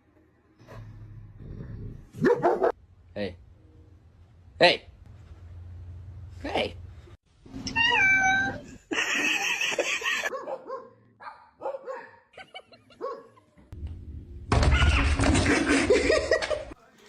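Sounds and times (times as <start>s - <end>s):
dog barking and yipping: 2.2s - 2.8s, 10.2s - 12.3s, 12.9s - 13.4s.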